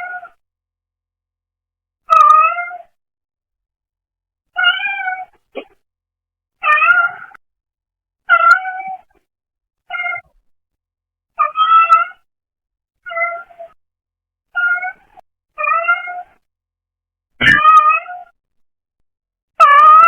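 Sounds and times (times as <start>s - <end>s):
cat meowing: 2.1s - 2.9s, 4.6s - 5.7s, 6.6s - 7.4s, 9.9s - 10.3s, 11.4s - 12.2s, 14.6s - 16.4s, 17.4s - 18.3s, 19.6s - 20.0s.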